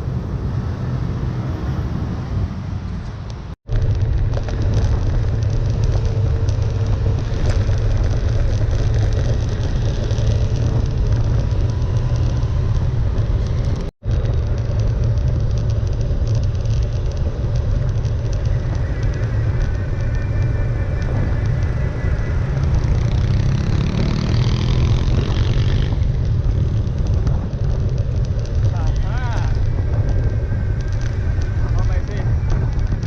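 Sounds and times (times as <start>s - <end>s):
low rumble of road traffic: 0.0s - 33.0s.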